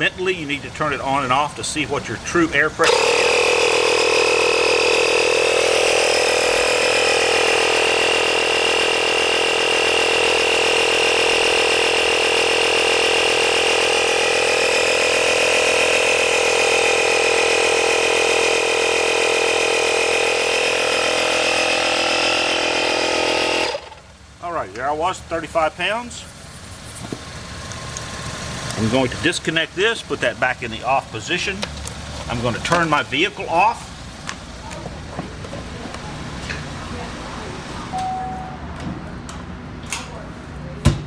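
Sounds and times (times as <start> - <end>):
electric air compressor running: 2.8 - 24.2.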